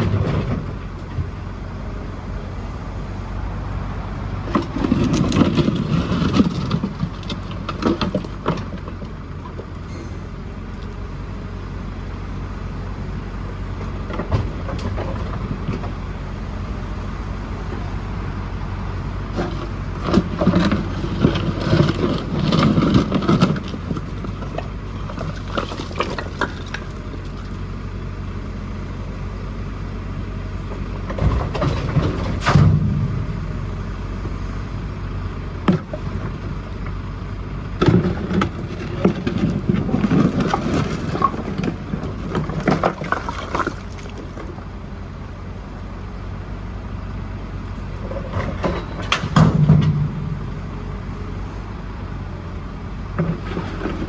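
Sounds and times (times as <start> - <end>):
diesel engine running: 0.0 - 54.0
engine clattering and knocking: 4.4 - 9.9, 19.4 - 27.8, 35.4 - 46.3, 47.8 - 51.3.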